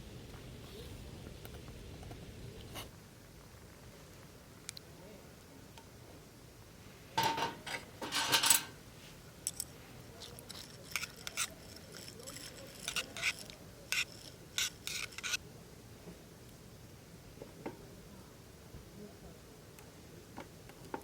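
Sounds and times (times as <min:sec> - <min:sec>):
metal utensils clinking: 0:07.2 - 0:08.8.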